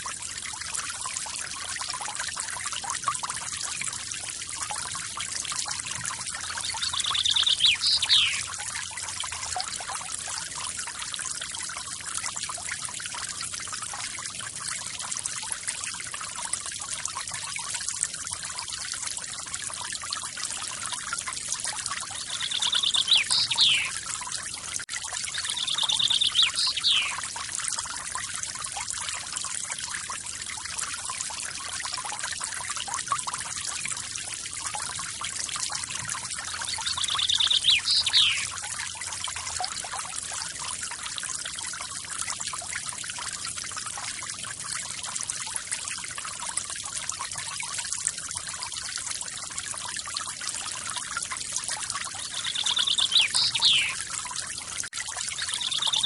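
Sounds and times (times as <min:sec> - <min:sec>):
bird trilling call: 0:06.7 - 0:08.5, 0:22.3 - 0:23.9, 0:25.4 - 0:27.2, 0:36.7 - 0:38.5, 0:52.3 - 0:54.0, 0:55.4 - 0:56.0.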